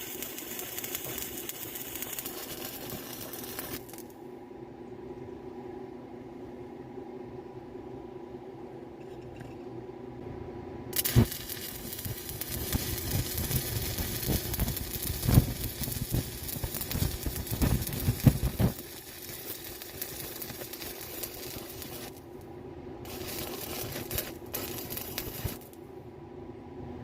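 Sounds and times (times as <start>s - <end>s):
welding arc crackling: 0.0s - 4.1s, 11.0s - 22.3s, 23.1s - 25.8s.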